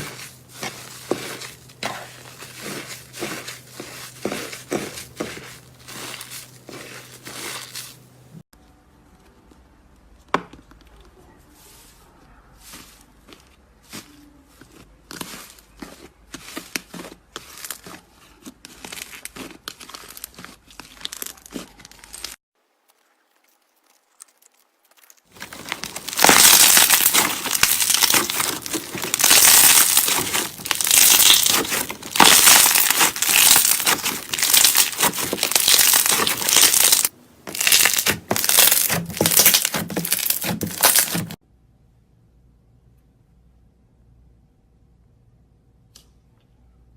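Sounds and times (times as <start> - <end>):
slime crackling and popping: 24.2 - 41.4.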